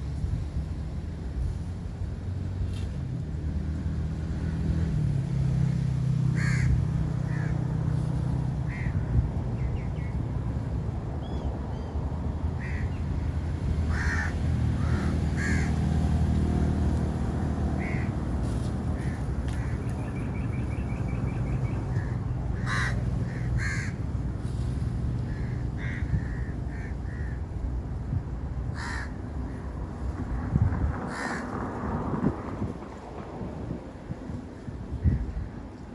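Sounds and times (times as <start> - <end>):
crows cawing: 6.4 - 7.6, 8.7 - 9.0, 12.6 - 12.9, 13.9 - 15.8, 17.8 - 18.1, 22.0 - 24.0, 25.3 - 27.4, 28.7 - 29.2, 31.1 - 31.5.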